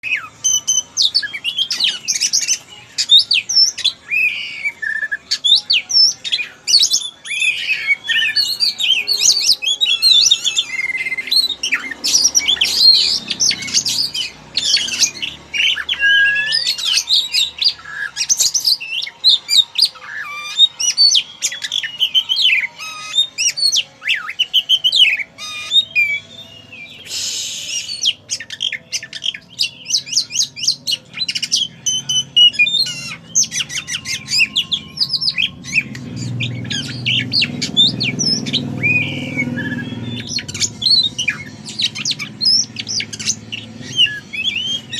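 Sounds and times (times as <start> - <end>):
bird singing whistled phrases: 0.0 - 44.9.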